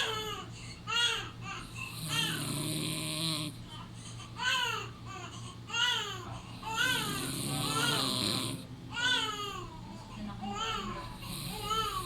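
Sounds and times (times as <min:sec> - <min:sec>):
baby whimpering: 0:04.4 - 0:08.4.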